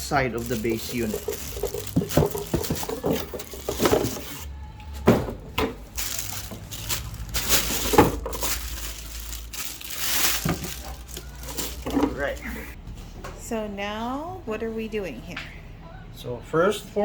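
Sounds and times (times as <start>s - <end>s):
packaging rustling: 0.0s - 4.5s, 6.0s - 12.8s
plastic parts knocking and clicking: 0.4s - 4.4s, 5.1s - 12.4s.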